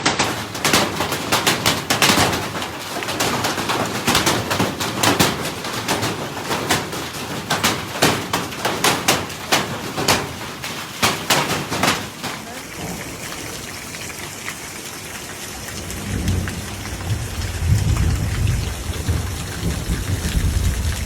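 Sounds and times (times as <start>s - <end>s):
hailstones striking hard surfaces: 0.0s - 14.4s, 15.2s - 21.0s
hiss of falling hail and rain: 0.0s - 21.0s.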